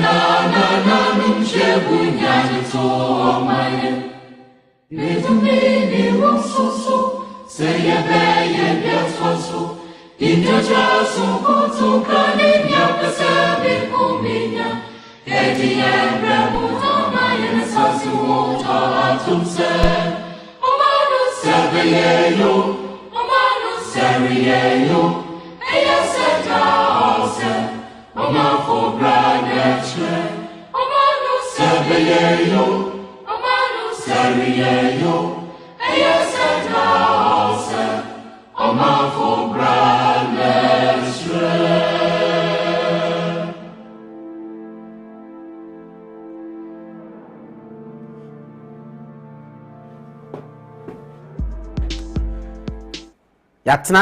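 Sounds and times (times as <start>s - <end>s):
choir singing in harmony: 0.0s - 52.1s.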